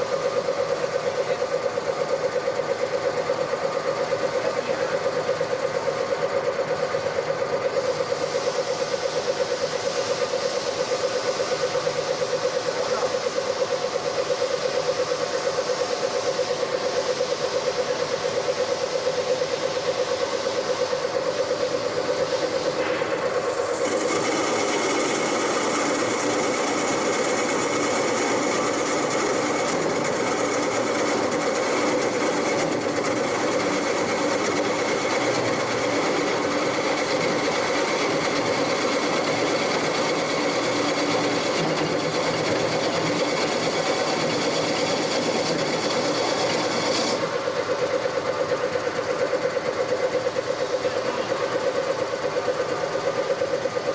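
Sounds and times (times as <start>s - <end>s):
lathe humming: 0.0s - 53.9s
high hiss: 14.8s - 24.4s.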